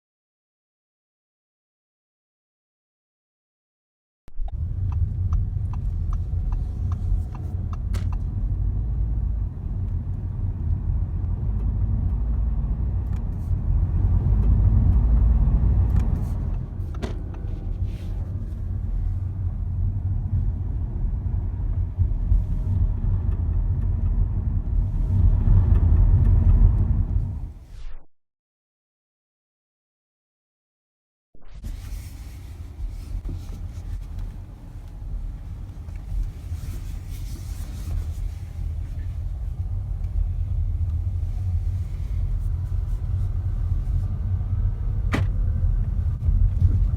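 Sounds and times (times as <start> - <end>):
car engine and road rumble: 4.3 - 27.8, 31.6 - 46.9
light ticks: 4.5 - 9.0, 9.8 - 17.4.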